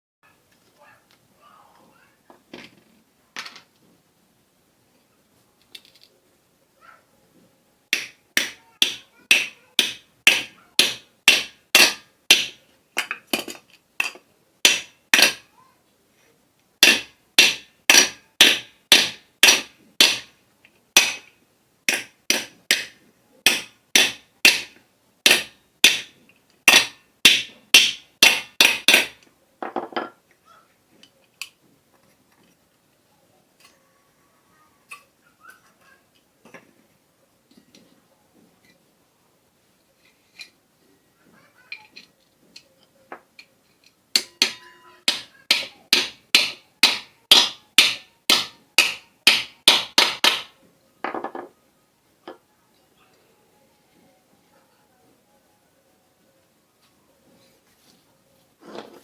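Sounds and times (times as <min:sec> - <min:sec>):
hammer striking metal: 0:07.9 - 0:13.2, 0:14.0 - 0:15.5, 0:16.8 - 0:20.4, 0:21.0 - 0:21.3, 0:21.9 - 0:29.2, 0:44.2 - 0:50.6.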